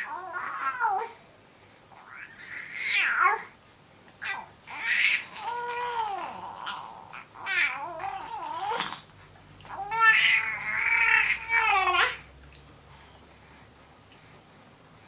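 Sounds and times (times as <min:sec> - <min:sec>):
baby crying: 0:04.3 - 0:09.0, 0:09.7 - 0:12.2.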